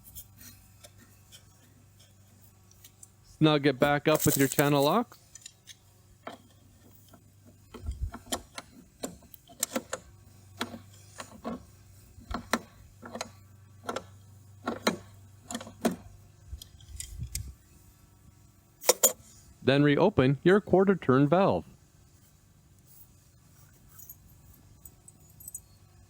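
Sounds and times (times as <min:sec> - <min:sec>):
pliers clicking on metal ring: 0:04.1 - 0:05.8.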